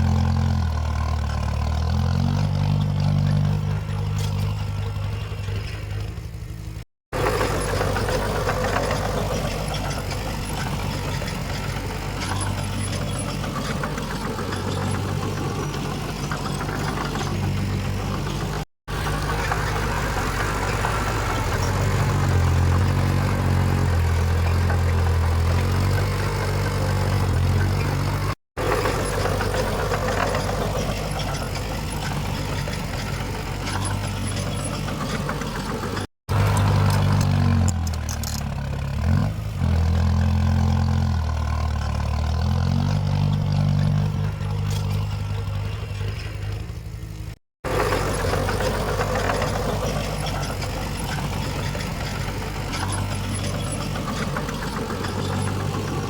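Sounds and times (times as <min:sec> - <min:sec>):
heavy diesel engine working: 0:00.0 - 0:56.0.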